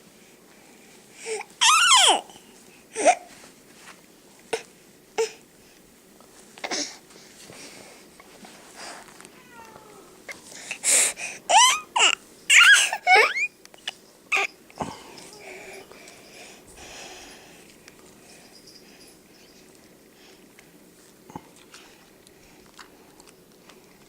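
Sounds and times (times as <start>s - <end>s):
young child babbling and squealing: 1.6s - 2.3s, 11.5s - 13.5s.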